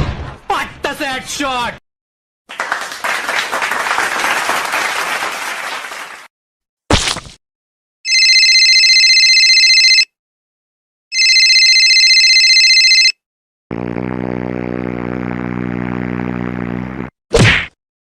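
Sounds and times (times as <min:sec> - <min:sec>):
telephone ringing: 0:08.1 - 0:10.1, 0:11.1 - 0:13.2.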